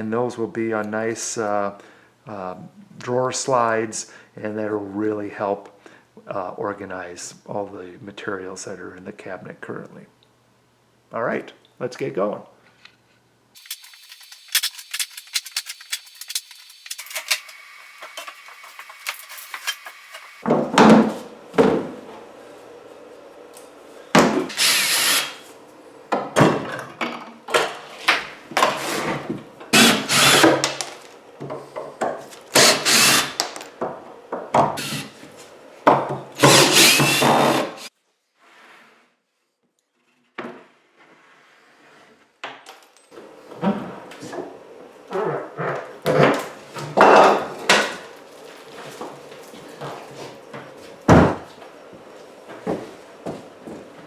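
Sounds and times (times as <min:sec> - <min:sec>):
power drill on wood: 0:24.5 - 0:25.4, 0:29.8 - 0:30.8, 0:32.5 - 0:33.5, 0:34.8 - 0:35.3, 0:36.4 - 0:37.9.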